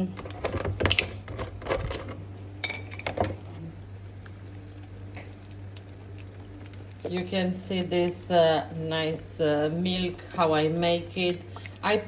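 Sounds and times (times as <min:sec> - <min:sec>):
dishes and utensils clinking: 0:02.6 - 0:03.4.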